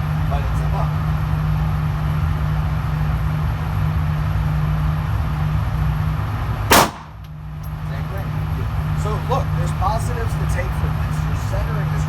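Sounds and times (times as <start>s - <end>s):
steady low hum: 0.0s - 12.0s
loud pistol shot: 6.7s - 7.2s.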